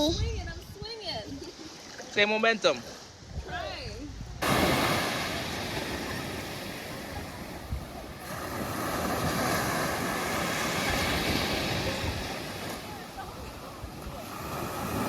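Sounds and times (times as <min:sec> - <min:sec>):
wind buffeting microphone: 0:00.0 - 0:01.6, 0:03.0 - 0:15.0
sea surf rushing: 0:03.4 - 0:15.0.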